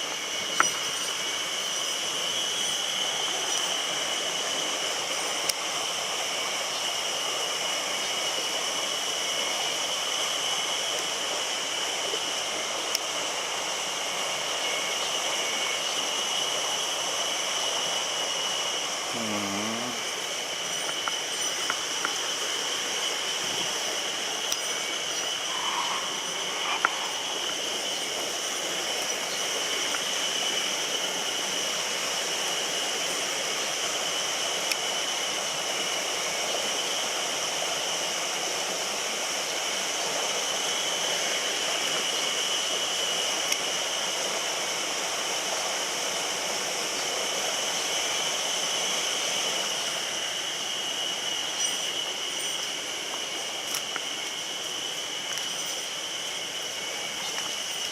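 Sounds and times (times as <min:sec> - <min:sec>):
stream water rushing: 0:20.0 - 0:57.9.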